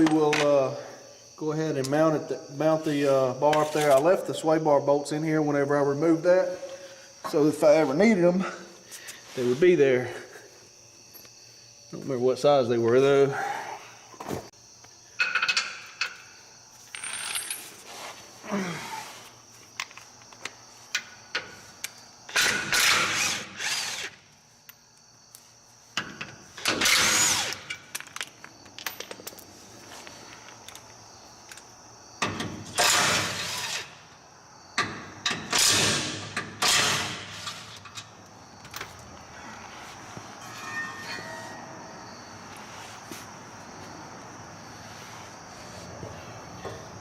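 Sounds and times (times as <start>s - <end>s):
impact wrench bursts: 22.3s - 24.2s, 26.6s - 27.8s, 32.6s - 34.0s, 35.2s - 37.8s.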